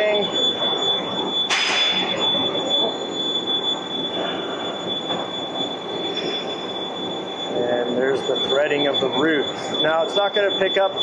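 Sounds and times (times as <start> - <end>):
high-pitched machine whine: 0.0 - 11.0
machinery hum: 0.0 - 11.0.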